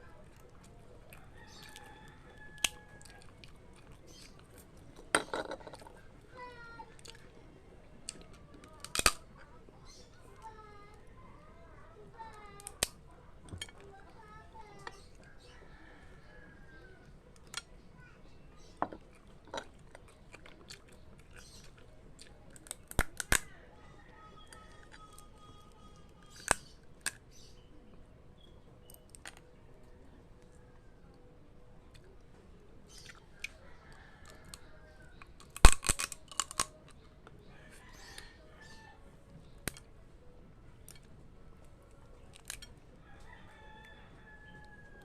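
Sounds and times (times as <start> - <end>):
crackling crunch: 0.0 - 7.3, 8.0 - 11.0, 17.4 - 23.6, 24.3 - 28.0, 30.4 - 38.3, 40.8 - 45.0
person chewing: 2.6 - 5.1, 19.0 - 23.4
loud cracks: 35.4 - 36.8
person eating crunchy food: 35.4 - 36.8
utensils clicking: 35.4 - 36.8.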